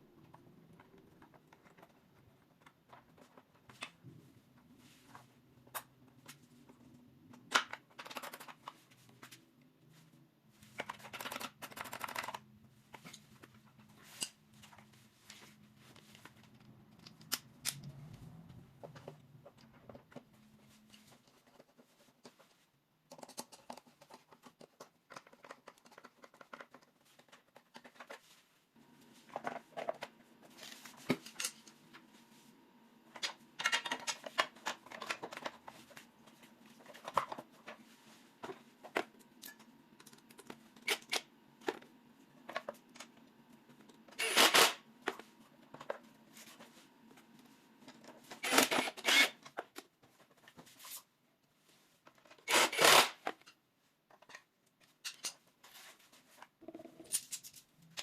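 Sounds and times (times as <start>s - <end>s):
objects being handled: 0.0s - 58.0s.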